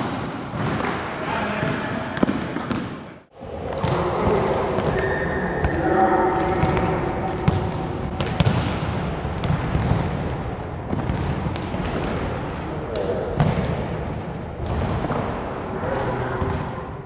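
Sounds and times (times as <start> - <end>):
basketball bouncing on gym floor: 0.0 - 3.2, 7.4 - 10.3
players' voices: 0.0 - 3.3.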